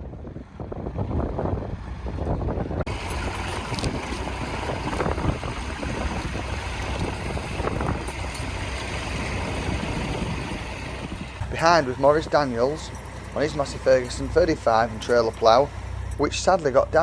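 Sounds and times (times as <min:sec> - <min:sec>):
wind buffeting microphone: 0:00.0 - 0:17.0
tractor engine running: 0:00.3 - 0:17.0.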